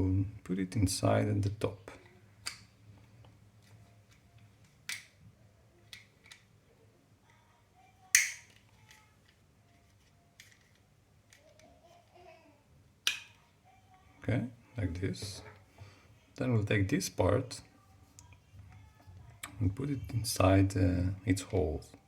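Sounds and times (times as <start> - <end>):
plastic parts clicking and knocking: 5.8 - 6.5, 8.2 - 11.7.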